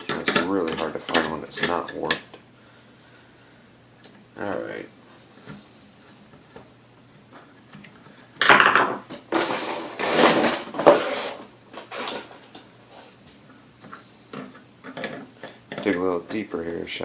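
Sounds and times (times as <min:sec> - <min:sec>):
metal tools clattering and scraping: 0:08.4 - 0:13.2, 0:14.4 - 0:16.4.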